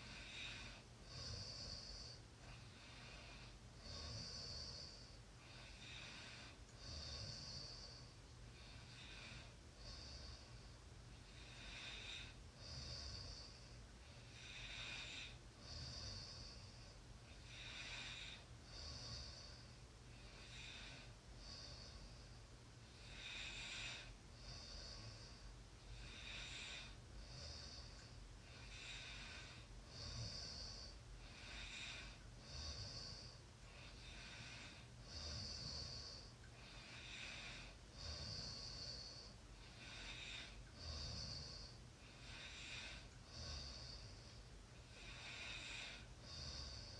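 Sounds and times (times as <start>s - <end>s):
steady low hum: 0.0s - 46.9s
person snoring: 26.0s - 44.2s, 44.9s - 46.9s.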